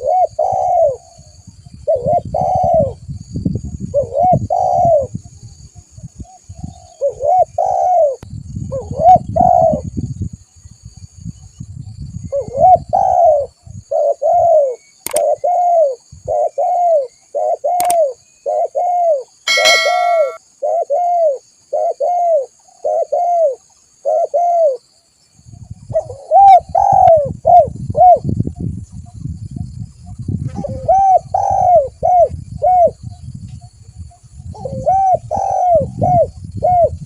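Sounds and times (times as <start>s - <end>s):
dove cooing: 0.0s - 1.2s, 1.9s - 3.0s, 4.0s - 5.1s, 6.6s - 8.2s, 8.8s - 9.8s, 12.4s - 24.8s, 26.0s - 28.2s, 30.6s - 33.0s, 34.6s - 37.0s
sharp clicks: 15.0s - 15.3s, 17.8s - 18.0s
short ringing note: 19.5s - 20.4s.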